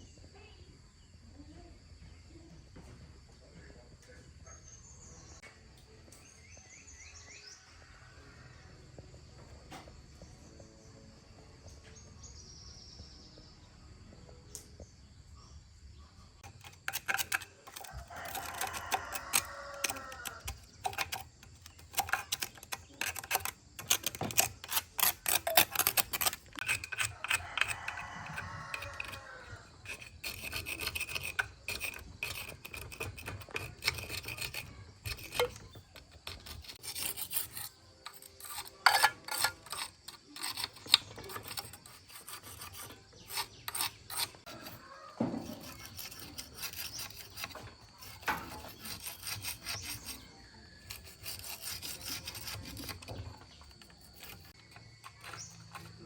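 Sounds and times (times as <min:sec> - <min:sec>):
hand scraping strokes: 0:16.4 - 0:56.0.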